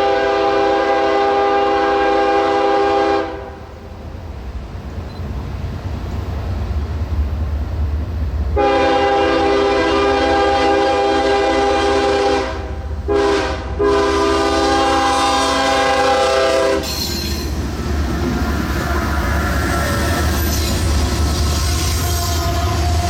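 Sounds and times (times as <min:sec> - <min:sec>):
locomotive air horn blasts: 0:00.0 - 0:03.6, 0:08.6 - 0:17.1, 0:21.8 - 0:23.0
train rumble: 0:00.0 - 0:23.0
train wheel noise: 0:00.0 - 0:23.0.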